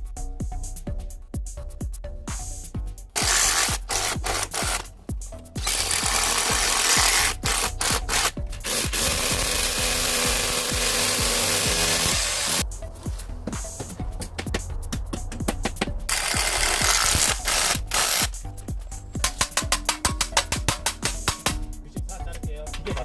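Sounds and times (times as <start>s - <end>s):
background music with steady beat: 0.0s - 23.0s
loud hissy power tool: 3.2s - 4.9s, 5.6s - 12.6s, 16.1s - 18.3s.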